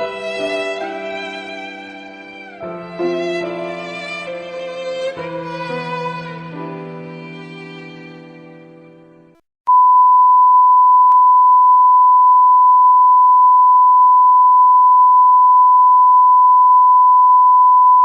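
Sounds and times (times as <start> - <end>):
steady pure beep tone: 9.7 - 18.0.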